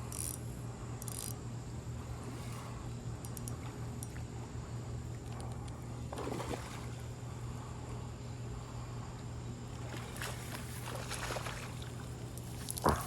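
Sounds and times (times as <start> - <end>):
steady low hum: 0.0 - 13.0
water splashing and trickling: 9.8 - 13.0.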